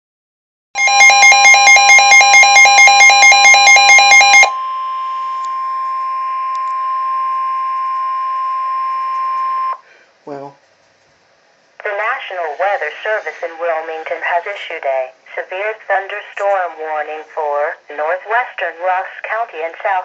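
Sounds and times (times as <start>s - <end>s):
steady alarm tone: 0.8s - 9.8s.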